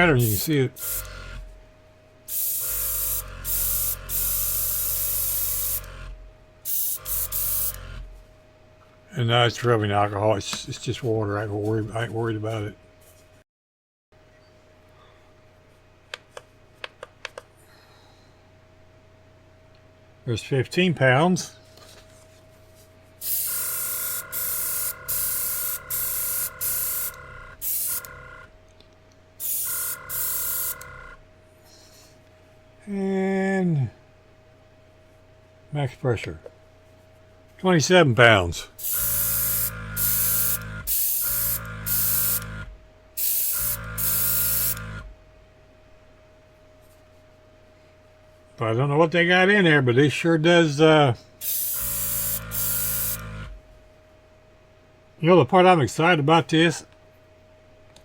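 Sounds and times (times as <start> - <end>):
compressor humming: 0.0 - 11.3, 23.1 - 31.6, 37.6 - 46.4, 51.3 - 54.3
airbrush spraying hiss: 0.2 - 1.1, 2.3 - 5.9, 6.7 - 7.8, 23.2 - 28.1, 29.4 - 30.8, 38.8 - 42.5, 43.2 - 44.8, 51.4 - 53.3.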